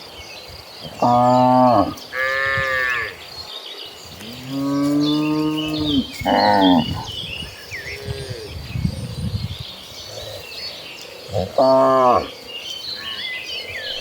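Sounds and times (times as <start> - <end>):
cattle mooing: 11.3 - 12.3.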